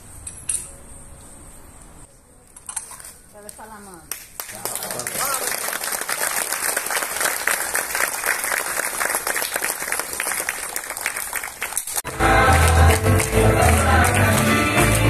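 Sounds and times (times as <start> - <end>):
people applauding: 4.4 - 15.0
music with steady bass: 12.0 - 15.0.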